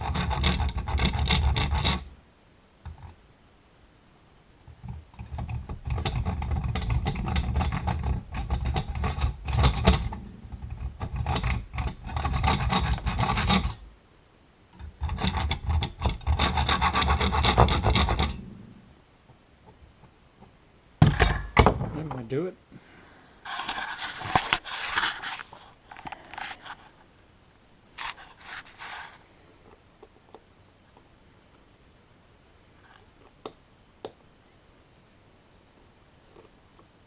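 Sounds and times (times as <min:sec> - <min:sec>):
hand file strokes on metal: 0:15.2 - 0:18.4.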